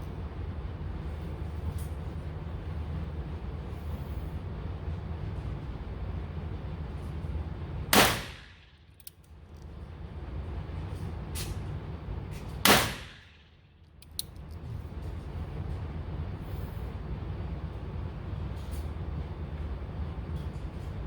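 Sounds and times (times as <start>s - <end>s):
steady low hum: 0.0s - 21.0s
loud gunshots: 8.0s - 8.5s, 12.7s - 13.2s
faint gunshots: 8.0s - 8.6s.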